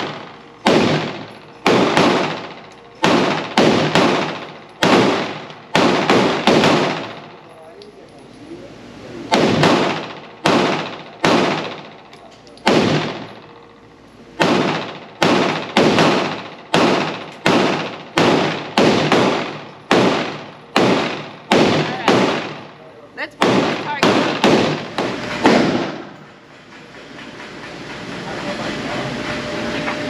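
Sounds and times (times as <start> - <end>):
pistol shots: 0.0 - 7.4, 9.3 - 13.5, 14.4 - 22.8, 23.4 - 26.2.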